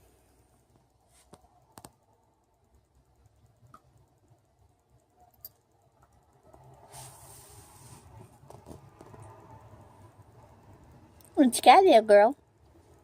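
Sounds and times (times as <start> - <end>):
soft hiss: 6.6 - 11.4.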